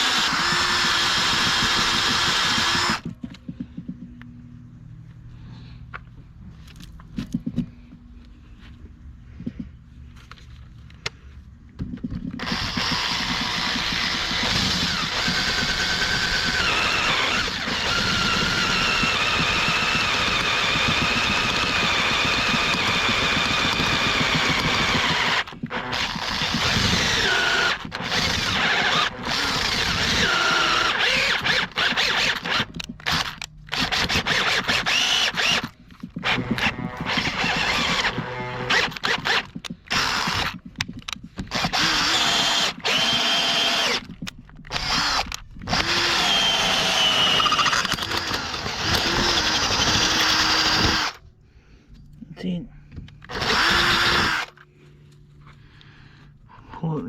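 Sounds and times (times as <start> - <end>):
electric drill whining under load: 0.0 - 3.1, 12.4 - 40.6, 41.5 - 51.2, 53.2 - 54.6.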